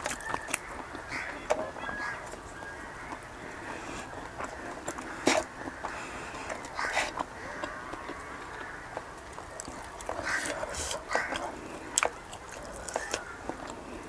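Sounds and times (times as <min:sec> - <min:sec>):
mouth clicks and smacks: 0:04.3 - 0:13.8
person chewing and biting: 0:04.8 - 0:13.9.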